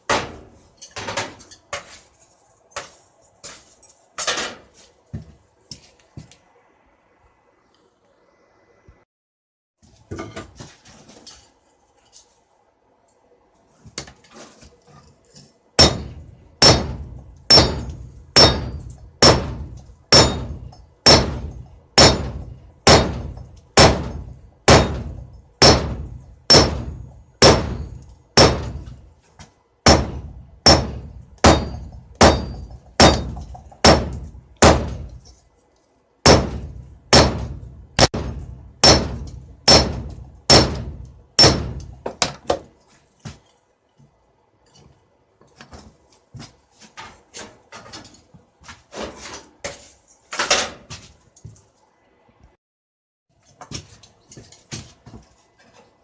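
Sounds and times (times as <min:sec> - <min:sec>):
hammer striking steel on anvil: 0:15.8 - 0:29.0, 0:29.8 - 0:35.2, 0:36.2 - 0:42.0.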